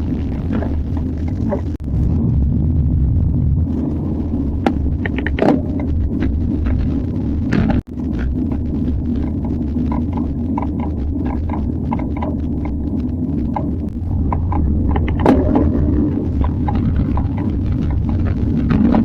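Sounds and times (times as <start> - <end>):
steady low rumble: 0.0 - 19.0
bicycle clicking: 7.5 - 19.0.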